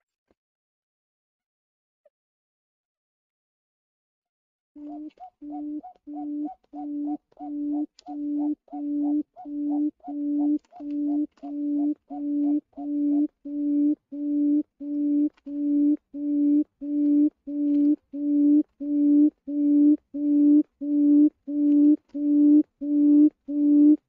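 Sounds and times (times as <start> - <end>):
quail hooting call: 4.8 - 24.0.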